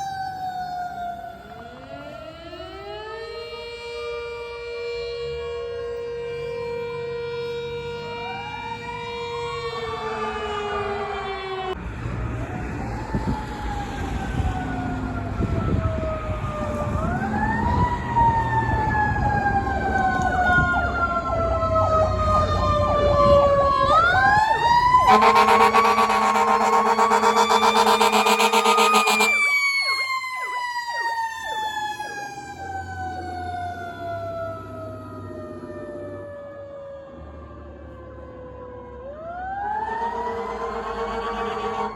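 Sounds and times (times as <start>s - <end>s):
engine and road rumble: 0.0s - 41.9s
fire truck sirens wailing: 0.0s - 41.9s
horn blaring: 23.8s - 32.3s, 39.8s - 41.9s.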